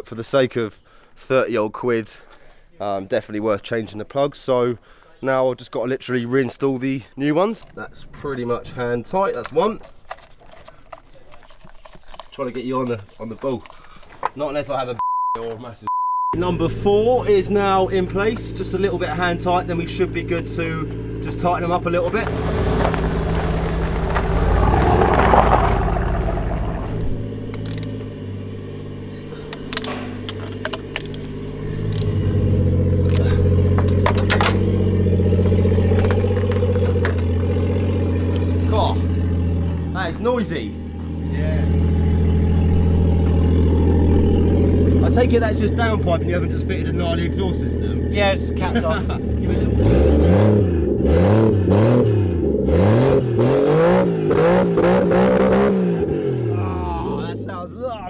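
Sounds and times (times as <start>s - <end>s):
car engine through loud exhaust: 16.4s - 56.8s.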